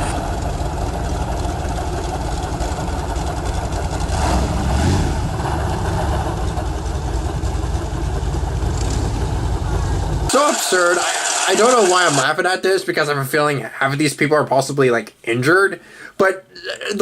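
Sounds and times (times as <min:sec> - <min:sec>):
motorboat engine running: 0:00.0 - 0:10.3.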